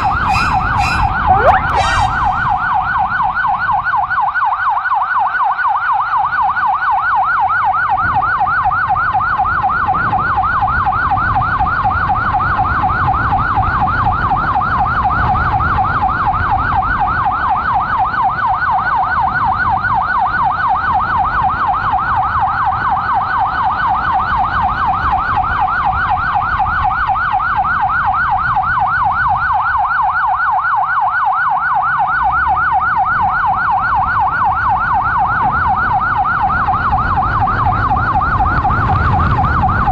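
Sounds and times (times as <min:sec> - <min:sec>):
electronic siren yelping: 0:00.0 - 0:03.8.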